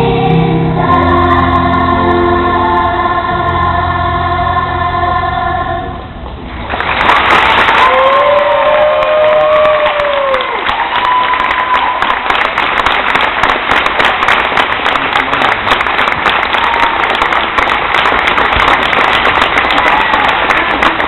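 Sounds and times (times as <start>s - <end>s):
crowd applauding: 6.6s - 21.0s.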